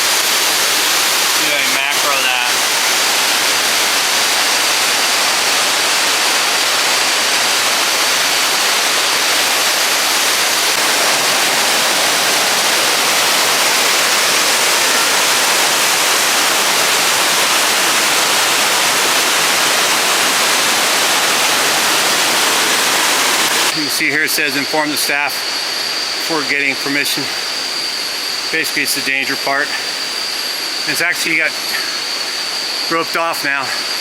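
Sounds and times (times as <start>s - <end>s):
waterfall rushing: 0.0s - 23.7s.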